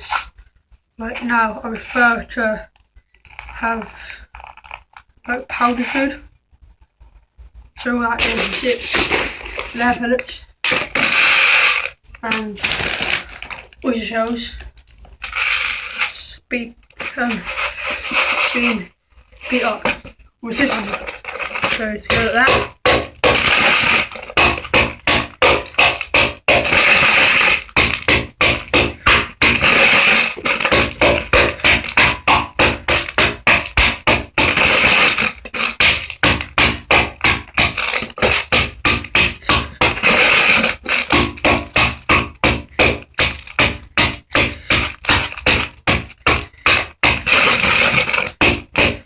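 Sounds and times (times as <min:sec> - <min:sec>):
grinding scrapes: 0:10.7 - 0:16.3, 0:16.9 - 0:22.6, 0:44.4 - 0:48.4
pounding strikes in a container: 0:21.4 - 0:49.0.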